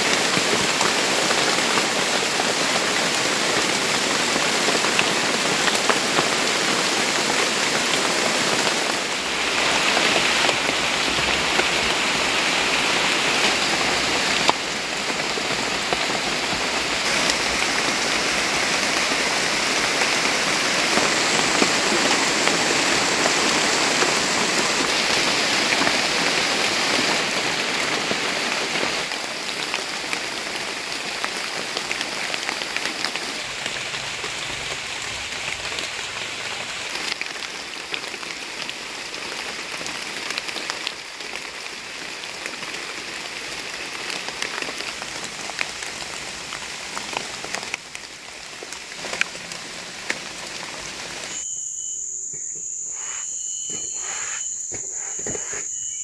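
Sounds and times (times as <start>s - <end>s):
steady rain falling: 0.0s - 51.4s.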